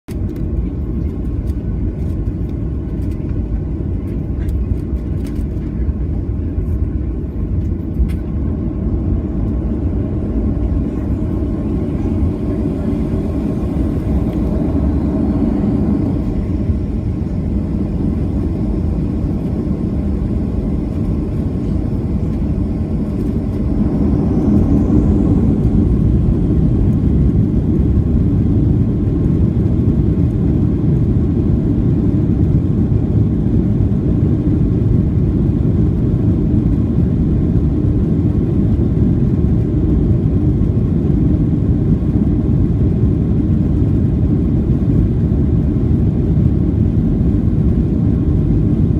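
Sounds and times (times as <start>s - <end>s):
high jet engine whine: 0.1s - 48.9s
jet engines rumbling: 0.1s - 48.9s.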